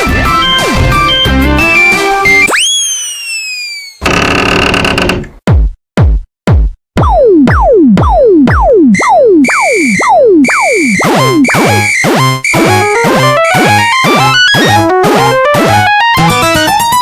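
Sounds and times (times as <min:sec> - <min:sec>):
drum machine thumps: 0:04.8 - 0:15.9
synthesizer music: 0:08.5 - 0:17.0.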